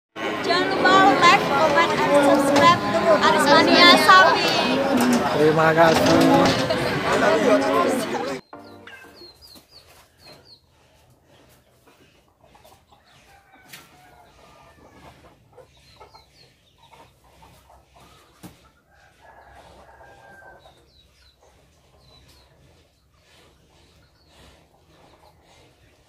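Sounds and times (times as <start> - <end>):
chickens clucking: 0.2 - 26.0
high bird chirps: 8.4 - 9.8.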